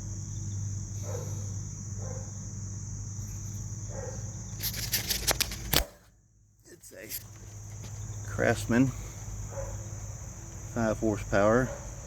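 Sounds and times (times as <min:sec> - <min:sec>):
crickets chirring: 0:00.0 - 0:12.0
distant dog barks: 0:01.0 - 0:02.4, 0:03.8 - 0:04.4, 0:09.4 - 0:10.0, 0:11.4 - 0:12.0.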